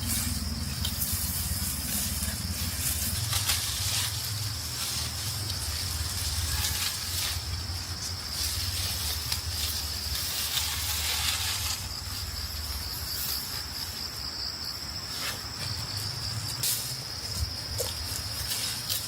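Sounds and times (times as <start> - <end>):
insects chirring: 0.0 - 19.0.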